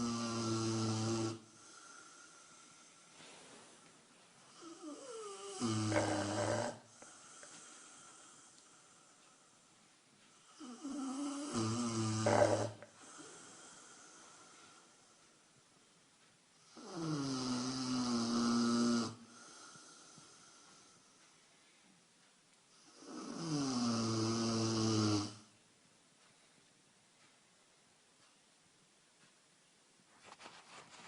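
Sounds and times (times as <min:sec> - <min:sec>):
dog snoring: 0:00.0 - 0:02.9, 0:04.5 - 0:08.5, 0:10.4 - 0:14.5, 0:16.6 - 0:20.9, 0:22.8 - 0:25.5.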